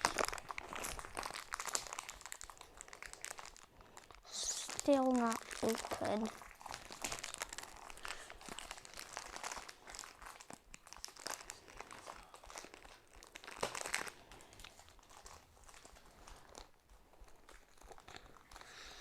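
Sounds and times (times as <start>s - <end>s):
plastic packaging crinkling: 0.0s - 19.0s.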